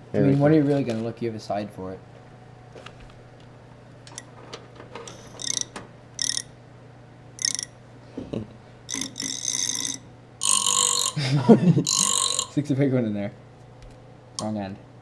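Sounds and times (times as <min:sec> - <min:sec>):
zip tie ratcheting tight: 0:05.4 - 0:06.5.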